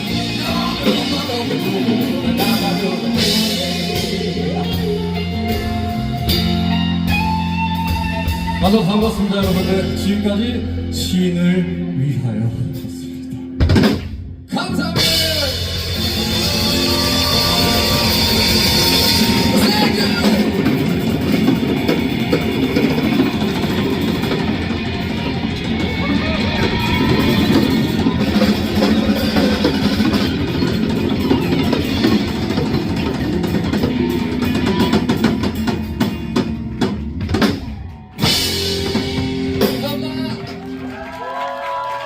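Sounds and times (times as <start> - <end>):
live band with drums and guitar: 0.0 - 42.0
audience applause and cheering: 15.4 - 42.0.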